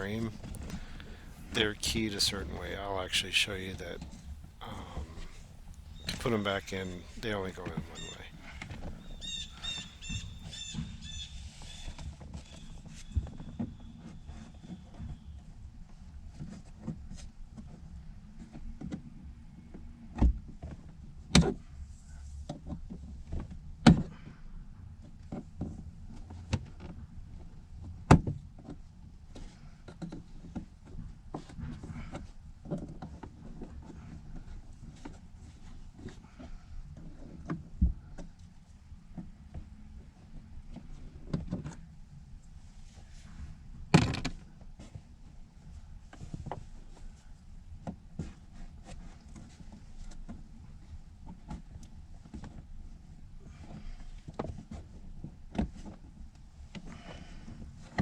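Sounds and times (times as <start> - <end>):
low steady hum: 0.0 - 10.4.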